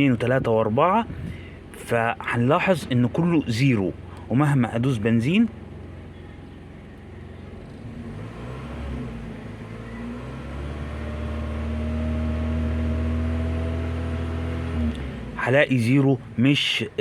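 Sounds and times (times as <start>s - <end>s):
car engine revving: 7.5s - 15.7s.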